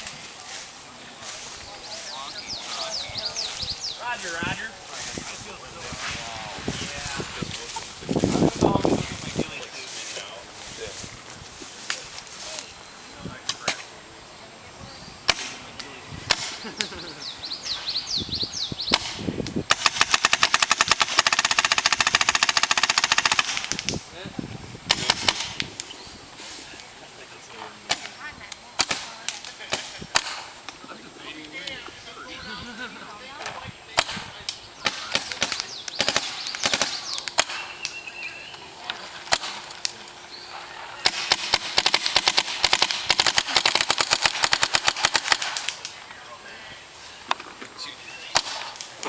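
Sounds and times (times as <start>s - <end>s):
paintball marker single shots: 15.2s - 16.9s, 18.9s - 21.3s, 28.8s - 30.8s, 34.0s - 38.0s, 48.3s - 49.0s
paintball marker full-auto firing: 18.9s - 24.0s, 34.9s - 37.7s, 41.0s - 45.8s.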